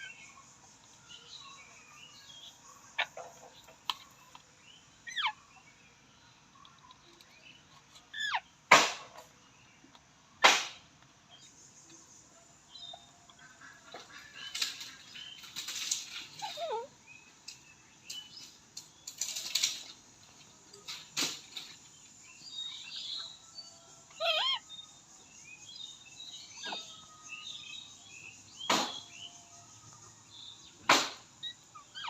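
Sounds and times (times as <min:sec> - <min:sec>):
parakeet squawks and screeches: 0:08.1 - 0:08.5, 0:24.1 - 0:24.6.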